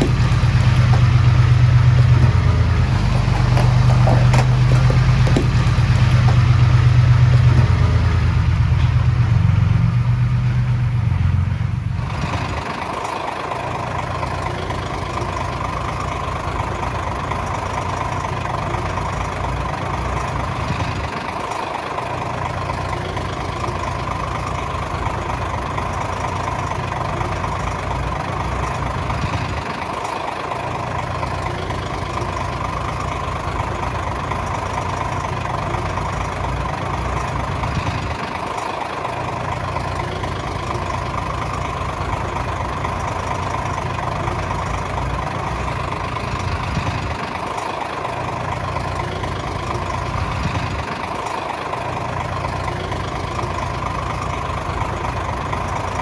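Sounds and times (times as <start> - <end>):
engine whine: 0.0 - 56.0
heavy diesel machinery engine: 0.0 - 56.0.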